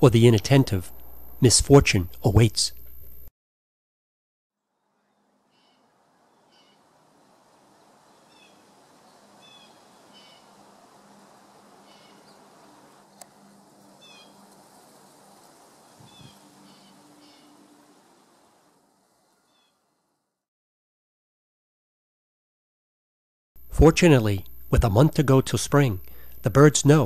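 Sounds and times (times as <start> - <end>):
steady low hiss: 0.0 - 3.3, 4.9 - 20.4, 23.6 - 27.0
bird chirps: 5.1 - 6.8, 8.2 - 10.6, 14.0 - 14.4, 16.0 - 17.7.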